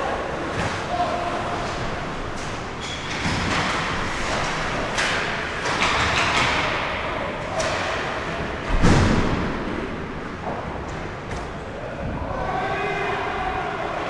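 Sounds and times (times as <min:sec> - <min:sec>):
loud thump: 0:08.7 - 0:09.8.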